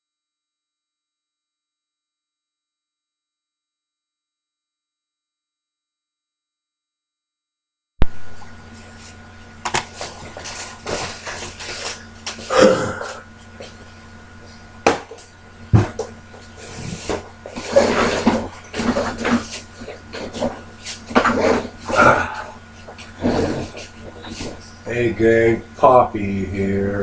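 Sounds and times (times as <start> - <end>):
faint electrical hum: 8.0 - 27.0.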